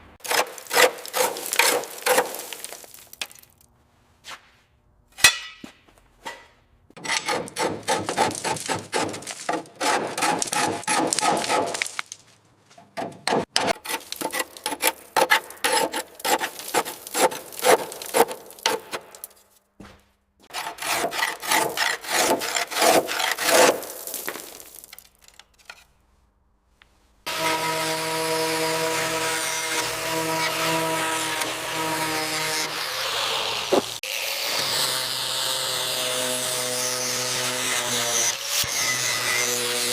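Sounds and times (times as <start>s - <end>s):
hand tool rasping: 0.2s - 2.8s, 7.0s - 11.8s, 13.0s - 19.1s, 20.4s - 24.5s.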